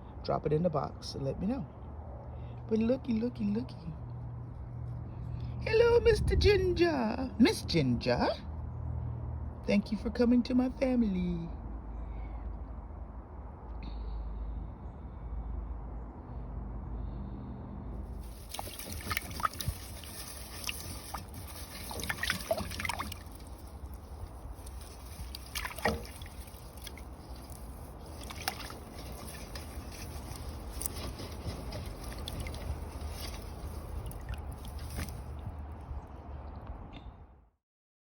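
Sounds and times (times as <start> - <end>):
water trickling and splashing: 18.1 - 36.7.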